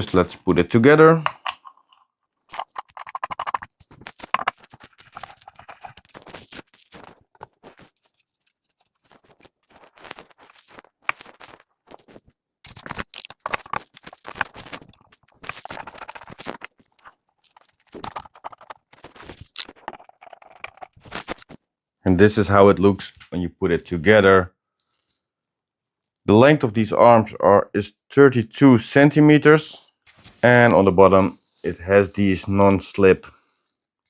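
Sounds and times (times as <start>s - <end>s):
plastic parts clicking and scraping: 1.2s - 21.6s.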